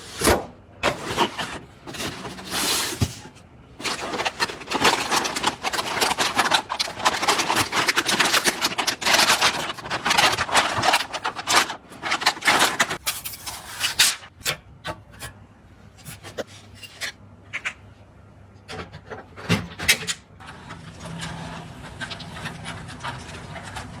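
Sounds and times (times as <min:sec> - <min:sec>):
rubbing and scraping of parts: 0:00.0 - 0:14.3, 0:15.9 - 0:17.8.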